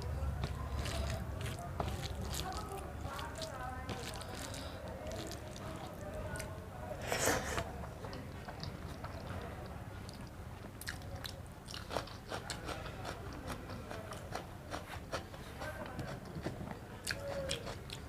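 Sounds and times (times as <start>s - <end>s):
person chewing: 0.4s - 7.7s, 10.1s - 15.3s.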